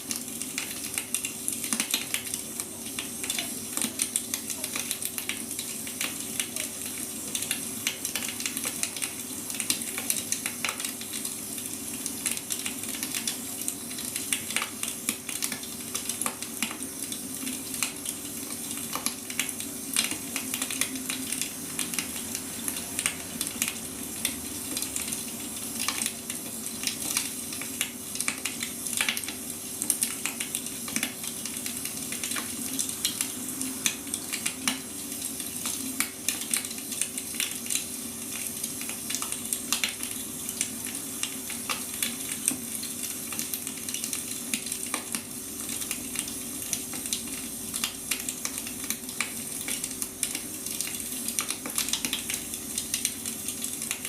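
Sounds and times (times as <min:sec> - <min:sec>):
faint steady hum: 0:00.0 - 0:54.0
firewood crackling and popping: 0:11.9 - 0:54.0.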